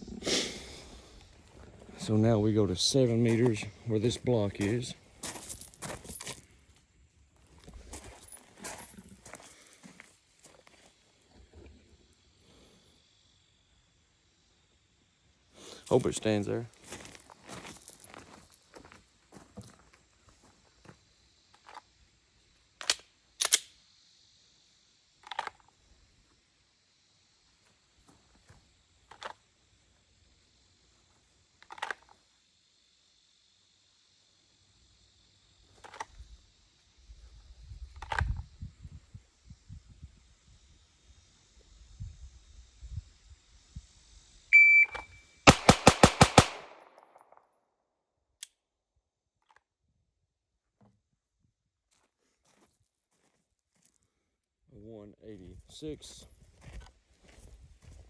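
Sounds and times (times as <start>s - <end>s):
sharp mechanical clacks: 22.8s - 23.8s
shot timer beep: 44.5s - 45.2s
pistol firing rapid shots: 45.5s - 47.2s.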